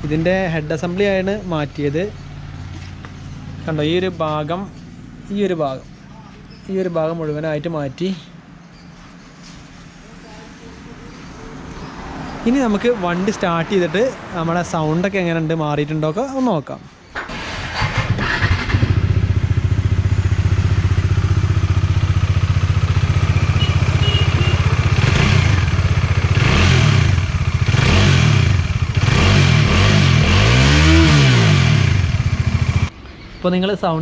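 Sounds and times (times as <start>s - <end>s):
motorcycle engine starting and revving: 17.1s - 32.9s.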